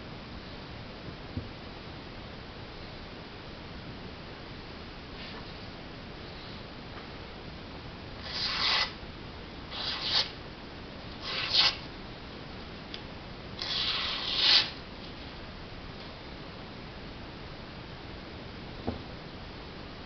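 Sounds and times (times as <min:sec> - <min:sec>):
knife scraping on whetstone: 0:08.2 - 0:09.0, 0:09.7 - 0:10.4, 0:11.2 - 0:11.8, 0:13.6 - 0:14.8.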